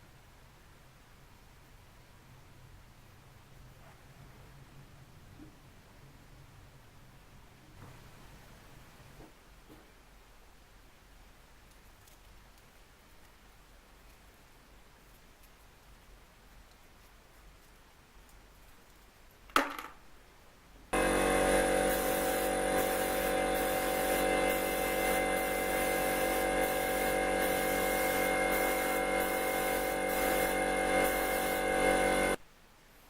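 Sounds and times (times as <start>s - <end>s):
scroll saw running: 21.0s - 32.4s.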